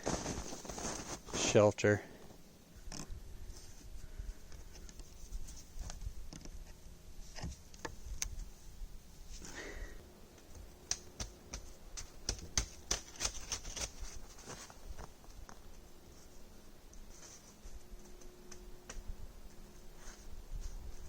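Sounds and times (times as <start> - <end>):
saplings and snow crunching: 0.0 - 6.4, 8.3 - 21.0
wood creak: 2.8 - 3.1.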